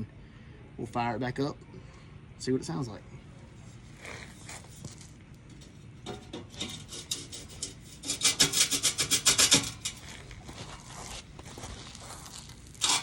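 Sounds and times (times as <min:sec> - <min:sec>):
metal rasping on metal: 0:04.0 - 0:10.2, 0:12.6 - 0:13.0.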